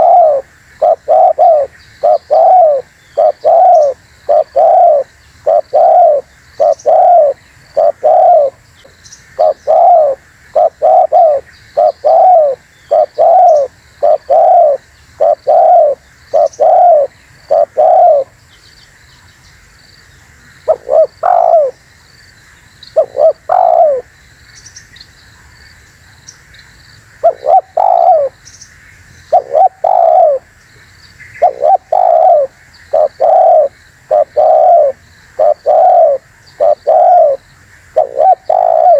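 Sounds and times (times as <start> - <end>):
dove cooing: 0.0 - 8.6, 9.4 - 18.3, 20.6 - 21.8, 23.0 - 24.1, 27.2 - 28.4, 29.3 - 30.5, 31.4 - 38.9
faint small bird chirps: 10.8 - 21.8, 22.8 - 25.6, 27.3 - 38.9.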